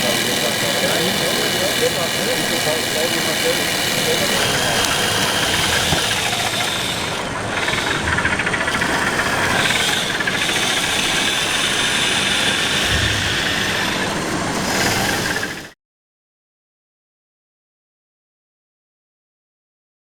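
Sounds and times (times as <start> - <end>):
mechanical whine: 0.0 - 15.8.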